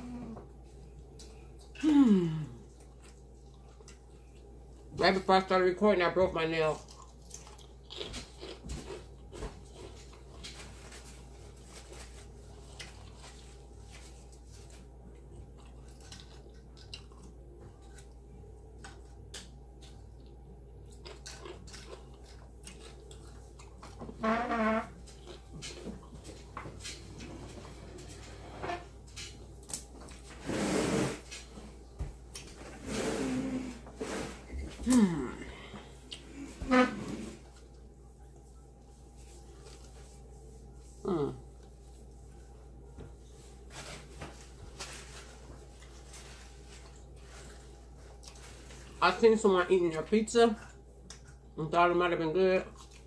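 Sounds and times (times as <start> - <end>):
person humming: 0.0 - 0.5, 1.8 - 2.6, 34.8 - 35.8
person chewing food: 0.0 - 4.9, 6.8 - 24.2, 24.9 - 28.4, 34.9 - 38.6, 45.4 - 49.0, 50.6 - 51.6, 52.7 - 53.0.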